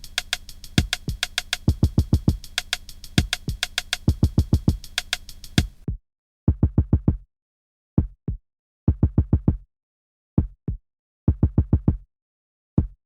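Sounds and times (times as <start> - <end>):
low pitched percussive thuds: 0.8 - 2.5, 3.2 - 5.8.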